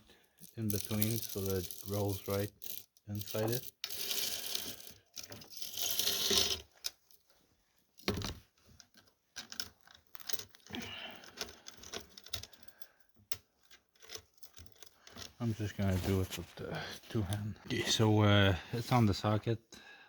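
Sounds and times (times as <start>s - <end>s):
saw chain links clicking: 0.4s - 6.6s.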